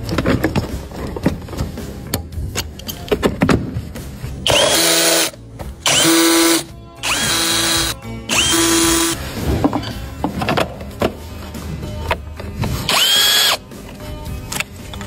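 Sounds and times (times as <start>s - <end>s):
power tool spinning: 4.5s - 5.3s, 5.9s - 9.2s, 12.9s - 13.6s.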